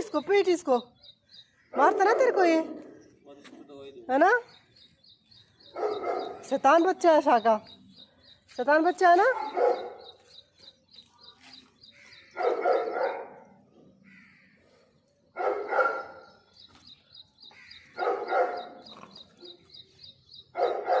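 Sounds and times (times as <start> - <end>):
dogs barking: 1.8 - 3.0, 5.7 - 6.7, 9.2 - 10.2, 12.3 - 13.6, 15.4 - 16.5, 17.9 - 19.3, 20.5 - 21.0.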